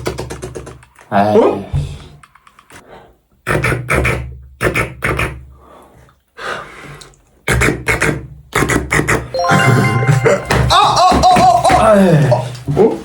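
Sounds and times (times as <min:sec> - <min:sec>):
person beatboxing: 0:03.5 - 0:05.4, 0:07.5 - 0:09.3.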